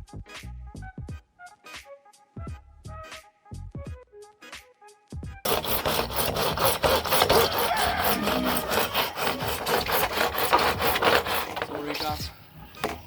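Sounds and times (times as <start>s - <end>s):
hand saw cutting pipe: 5.5s - 13.0s.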